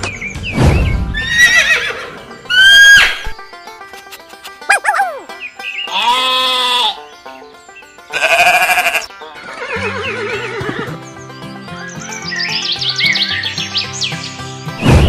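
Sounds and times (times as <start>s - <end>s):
sheep bleating: 5.9s - 7.0s, 8.1s - 10.8s.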